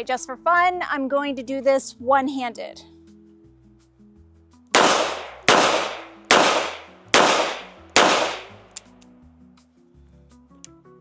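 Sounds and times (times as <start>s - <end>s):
revolver shots: 4.8s - 8.6s.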